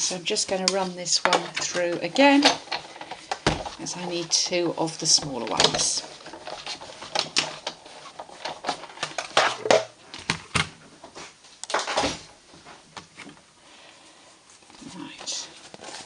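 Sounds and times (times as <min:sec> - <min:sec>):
plates scraping through rollers: 0:00.6 - 0:09.8.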